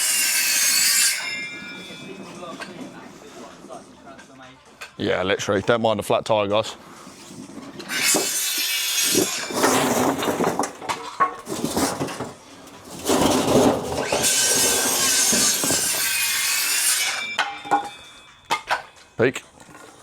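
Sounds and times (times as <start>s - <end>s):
shovel scraping soil and brick: 6.9s - 18.2s.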